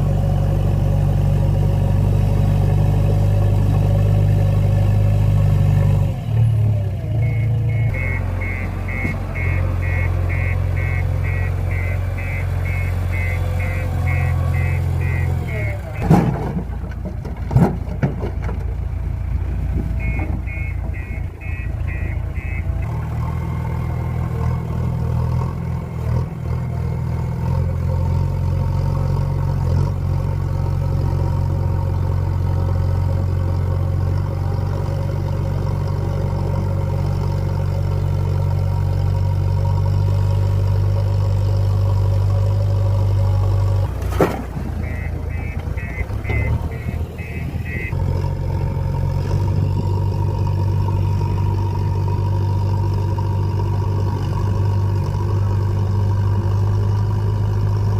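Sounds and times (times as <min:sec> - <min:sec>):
diesel engine droning: 0:00.0 - 0:57.9
quick high beeps: 0:07.2 - 0:16.1, 0:20.0 - 0:22.7, 0:44.8 - 0:48.0.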